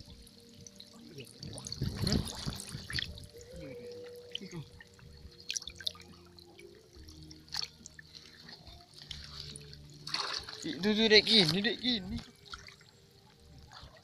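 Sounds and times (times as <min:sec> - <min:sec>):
person wading through water: 0:00.2 - 0:14.0
loud water splashes: 0:09.2 - 0:11.6.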